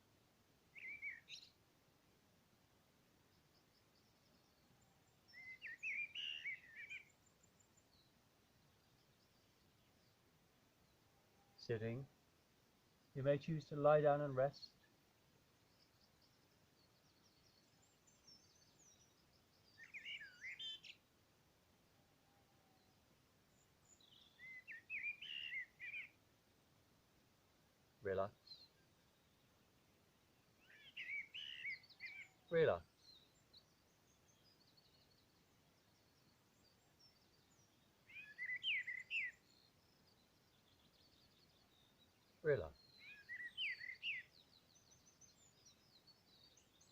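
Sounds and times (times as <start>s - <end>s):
songbirds singing: 0.0s - 46.9s
faint high bird chirps: 0.7s - 1.6s, 3.3s - 10.2s, 15.6s - 21.1s, 21.9s - 26.2s, 28.0s - 29.6s, 30.3s - 46.9s
sweeping birdsong phrase: 0.7s - 1.6s, 3.5s - 10.2s, 10.8s - 12.2s, 12.9s - 15.0s, 15.6s - 21.1s, 22.3s - 26.2s, 28.0s - 46.9s.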